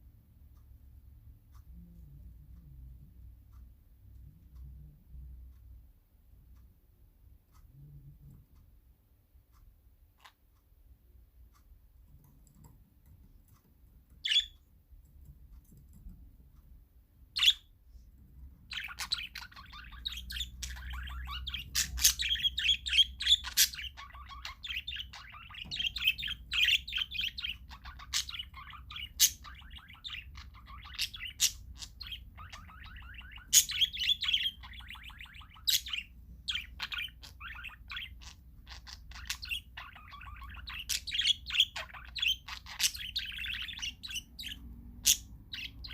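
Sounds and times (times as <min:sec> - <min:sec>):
parakeet flock chattering: 0:14.2 - 0:14.6, 0:17.3 - 0:17.8, 0:18.4 - 0:45.9
parakeet short calls: 0:29.2 - 0:45.9.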